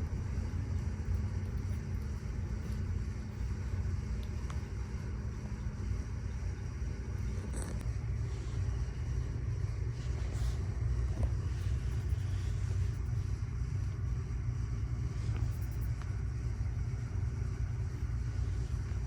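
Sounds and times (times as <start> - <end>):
kitten purring: 6.9 - 9.2.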